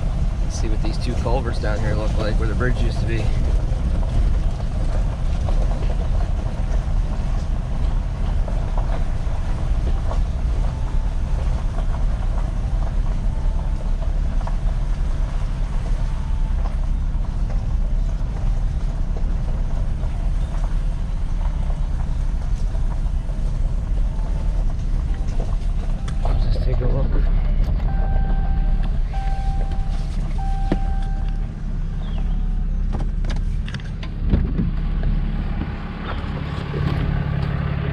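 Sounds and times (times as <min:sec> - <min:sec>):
vehicle rumbling on dirt track: 0:00.0 - 0:37.9.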